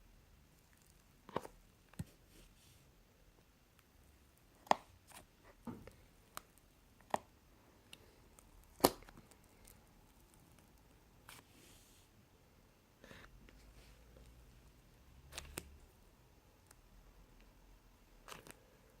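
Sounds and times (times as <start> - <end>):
slime popping and clicking: 8.7 - 9.3.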